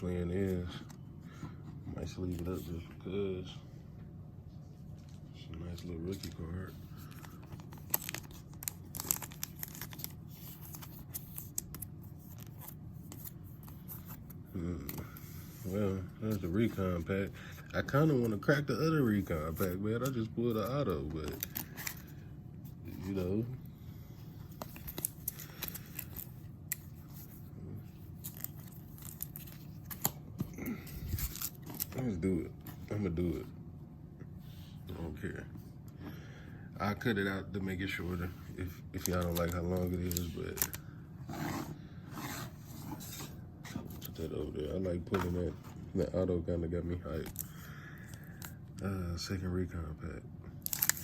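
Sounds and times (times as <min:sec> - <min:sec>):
low steady hum: 0:00.0 - 0:51.0
plastic crinkles and card scrapes: 0:04.8 - 0:22.2, 0:24.4 - 0:32.0, 0:38.9 - 0:44.3, 0:50.6 - 0:51.0.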